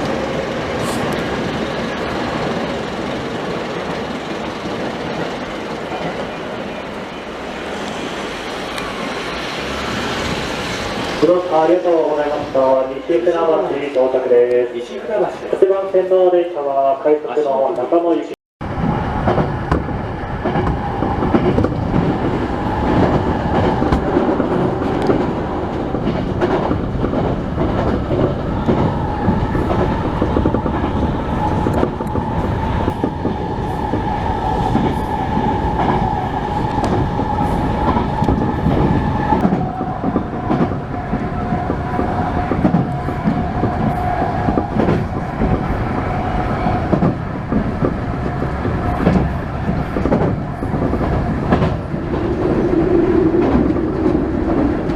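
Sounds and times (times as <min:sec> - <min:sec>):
electric train whine: 0:00.0 - 0:13.9
wheels clacking over rail joints: 0:00.0 - 0:14.6, 0:18.8 - 0:54.9.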